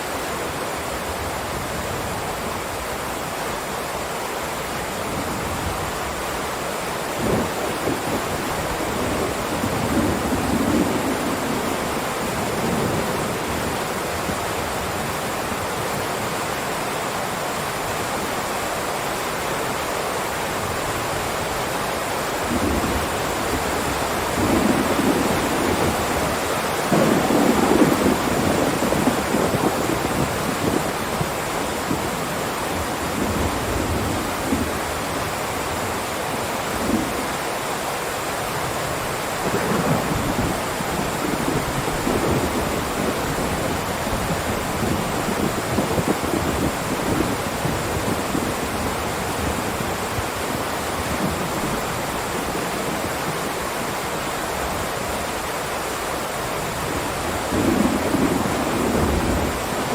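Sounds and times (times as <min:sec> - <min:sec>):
heavy rain pouring: 0:00.0 - 0:59.9.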